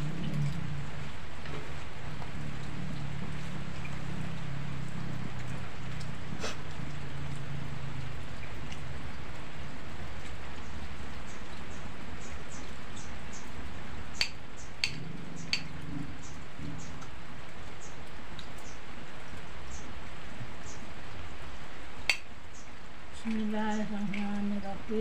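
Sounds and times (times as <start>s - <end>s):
light drips: 0.0s - 25.0s
steady rain: 0.0s - 25.0s.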